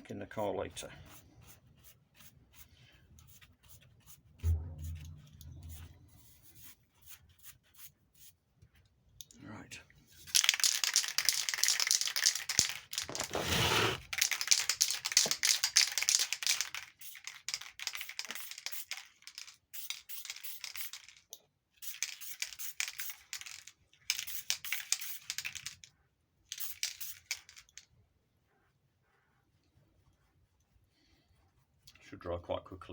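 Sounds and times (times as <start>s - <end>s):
spray paint can hissing: 10.3s - 21.1s, 21.8s - 25.8s, 26.5s - 27.7s.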